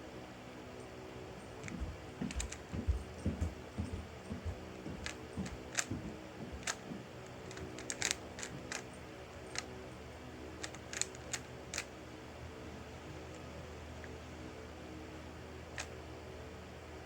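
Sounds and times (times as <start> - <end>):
faint steady hum: 0.0 - 17.0
puzzle cube plastic clicks: 7.4 - 8.8, 10.6 - 11.9.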